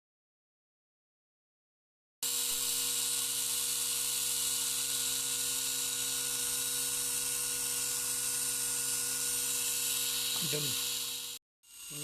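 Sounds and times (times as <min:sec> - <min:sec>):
small electric motor whine: 0:02.2 - 0:12.0.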